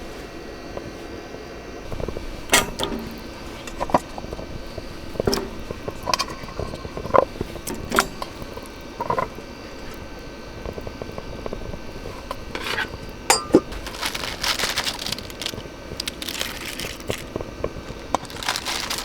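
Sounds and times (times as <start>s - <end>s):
cookware clinking and knocking: 12.5s - 14.7s.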